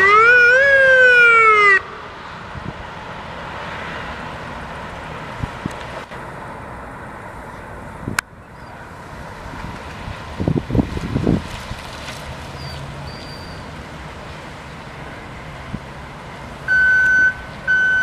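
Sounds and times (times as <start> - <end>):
electronic siren wail: 0.0 - 2.1, 16.7 - 18.0
road and engine noise: 0.0 - 18.0.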